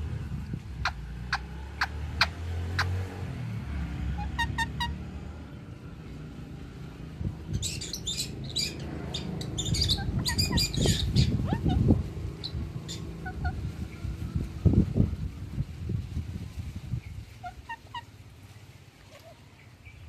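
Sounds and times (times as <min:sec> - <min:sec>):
low rumble: 0:00.0 - 0:17.4
parrot calling: 0:04.1 - 0:05.0, 0:07.6 - 0:13.6, 0:17.4 - 0:18.1.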